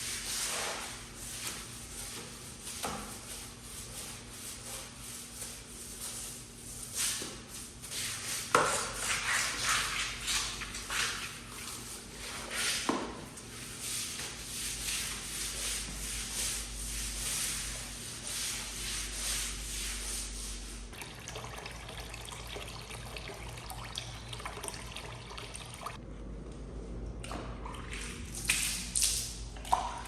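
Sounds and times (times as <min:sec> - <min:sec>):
water running and splashing: 0:21.0 - 0:26.0.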